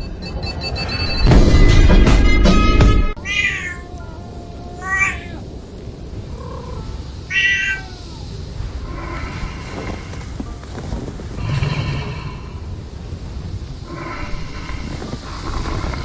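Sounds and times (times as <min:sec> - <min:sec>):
deep music hit: 0:01.0 - 0:03.2
cat meowing: 0:03.2 - 0:08.5.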